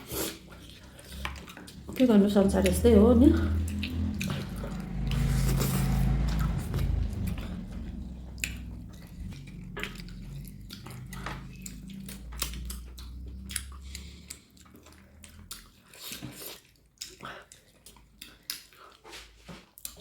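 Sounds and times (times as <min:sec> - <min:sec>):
low hum: 0:00.3 - 0:15.7.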